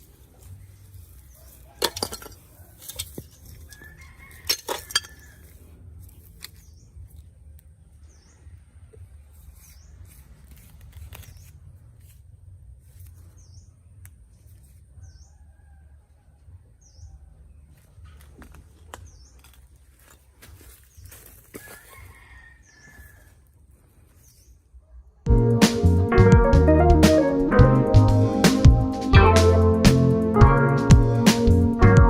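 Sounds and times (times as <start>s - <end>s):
clinks of small hard parts: 4.4s - 5.3s.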